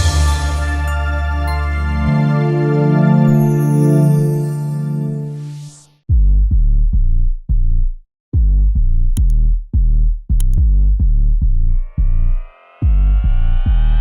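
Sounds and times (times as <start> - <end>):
electronic music with bass-heavy beats: 6.1 - 14.0
rising synth sweep: 11.7 - 14.0.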